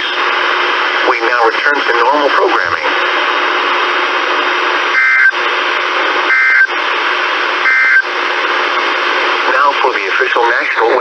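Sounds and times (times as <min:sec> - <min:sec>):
radio hiss: 0:00.0 - 0:11.0
buzzing data bursts: 0:04.9 - 0:05.4, 0:06.3 - 0:06.8, 0:07.6 - 0:08.1.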